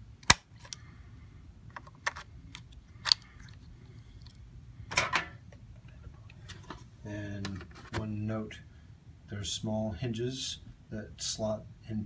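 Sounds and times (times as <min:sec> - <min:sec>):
plastic laptop parts clicking: 0:01.7 - 0:03.6.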